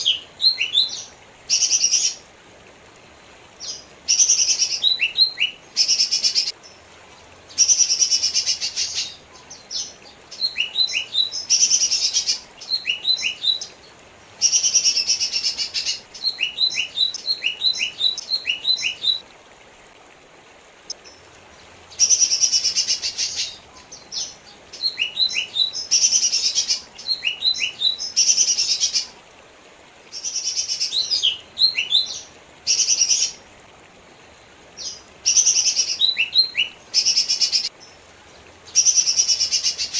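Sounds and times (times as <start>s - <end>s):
bird singing buzzy trills and whistles: 7.5s - 13.7s, 14.4s - 19.2s, 21.9s - 29.1s, 30.2s - 33.4s, 34.8s - 38.0s.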